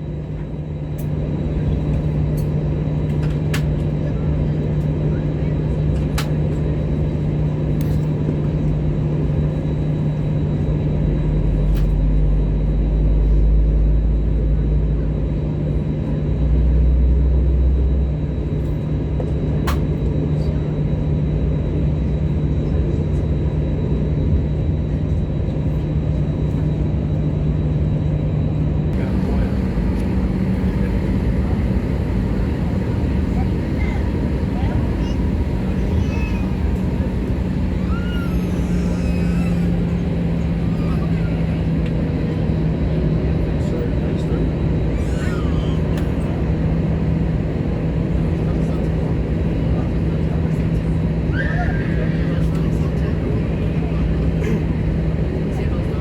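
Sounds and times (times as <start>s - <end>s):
aircraft cabin engine hum: 0.0s - 56.0s
deep rumble: 28.9s - 42.5s.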